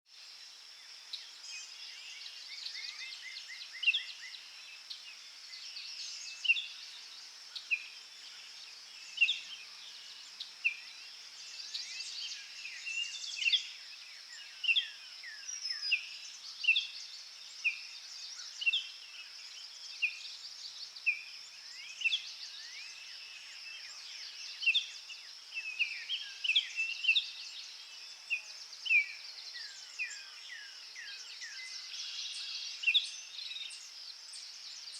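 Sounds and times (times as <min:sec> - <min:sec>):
songbirds chirping: 0:00.1 - 0:34.9
steady high-pitched hiss: 0:00.1 - 0:34.9.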